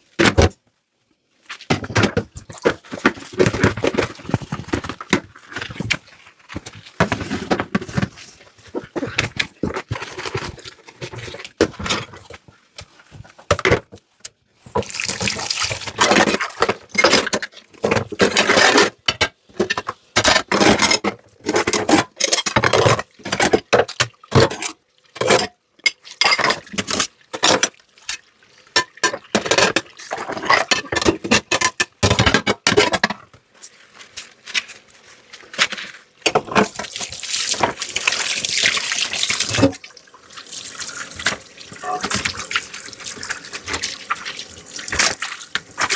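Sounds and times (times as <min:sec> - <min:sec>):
tap water splashing into sink: 0:14.8 - 0:16.8, 0:36.2 - 0:45.9.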